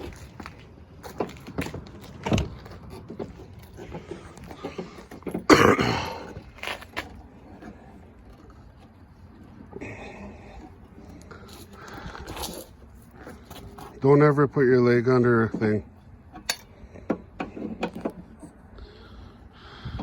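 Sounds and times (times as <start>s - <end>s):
person coughing: 5.5s - 6.3s.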